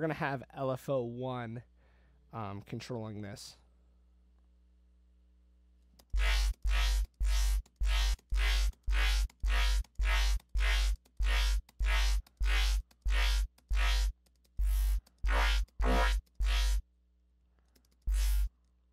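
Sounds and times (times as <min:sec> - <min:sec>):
distorted dubstep bass synth notes: 0:06.2 - 0:16.8, 0:18.1 - 0:18.5.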